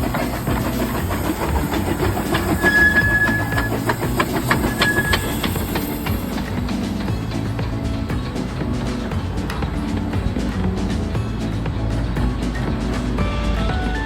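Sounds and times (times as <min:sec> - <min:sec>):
steady high tone: 0:00.0 - 0:09.4
rail clicking: 0:00.0 - 0:14.0
steam train running: 0:00.0 - 0:14.0.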